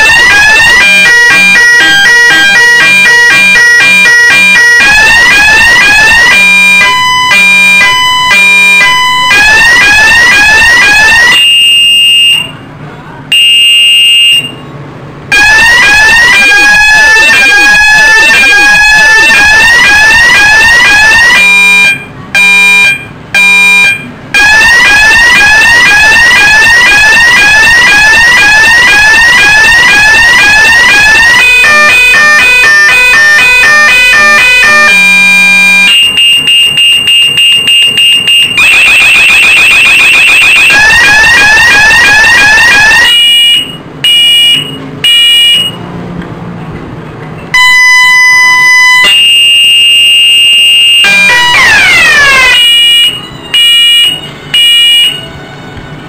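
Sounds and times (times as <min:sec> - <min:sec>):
electronic alarm sounder tones: 0:00.0 - 0:12.6, 0:13.3 - 0:14.6, 0:15.3 - 0:45.8, 0:47.5 - 0:55.4.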